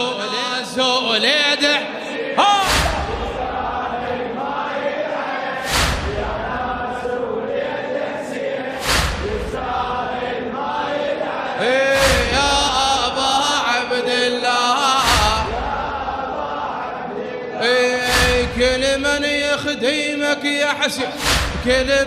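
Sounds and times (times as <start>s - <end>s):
wordless chanted vocals: 0.0s - 22.0s
heavy drum thumps: 2.6s - 3.8s, 5.7s - 6.7s, 8.8s - 9.8s, 12.0s - 13.2s, 15.0s - 16.1s, 18.1s - 19.2s, 21.2s - 22.0s.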